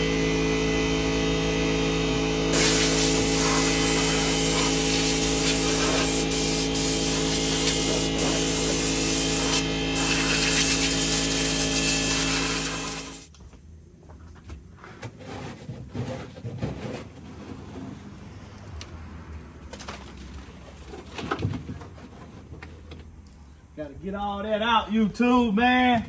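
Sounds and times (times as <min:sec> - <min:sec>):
power tool motor hissing: 0:02.4 - 0:13.3.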